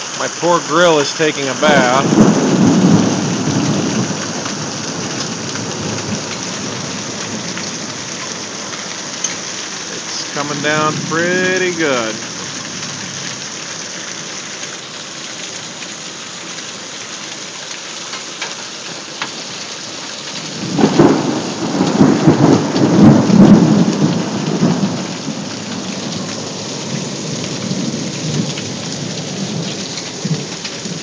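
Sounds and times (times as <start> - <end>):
heavy rain pouring: 0.0 - 31.0
thunder crack and rumble: 1.6 - 8.2, 20.4 - 31.0.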